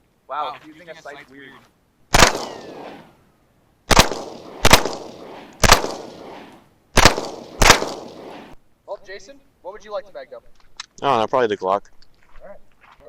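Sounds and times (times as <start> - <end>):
gunshots with echo: 2.1 - 3.1, 3.9 - 8.6.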